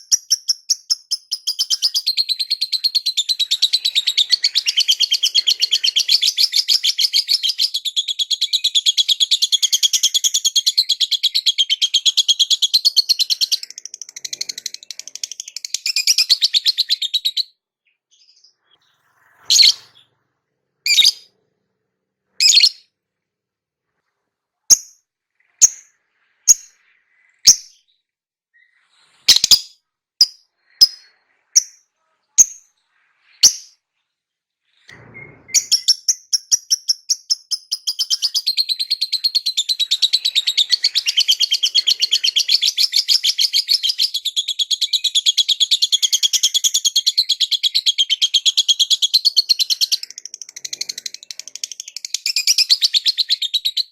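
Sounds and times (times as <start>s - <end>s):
lovebird chattering trill: 0.0s - 17.4s, 19.5s - 20.0s, 20.9s - 21.3s, 22.4s - 22.8s, 24.7s - 25.0s, 25.6s - 25.9s, 29.3s - 31.8s, 33.4s - 33.8s
sharp bird chirps: 0.0s - 21.4s, 22.3s - 23.0s, 24.7s - 53.9s.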